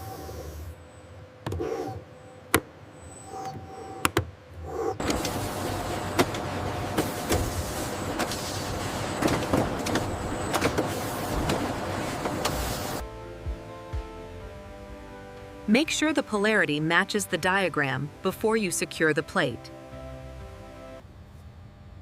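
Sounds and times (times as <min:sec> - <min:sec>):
factory machinery humming: 0:00.0 - 0:13.6
dense mechanical clatter: 0:05.0 - 0:13.0.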